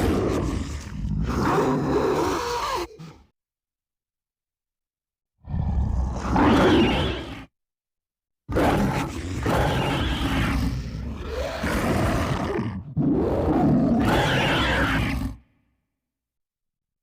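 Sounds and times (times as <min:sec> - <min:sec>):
man voicing monster roars: 0:00.0 - 0:03.3, 0:08.5 - 0:15.4.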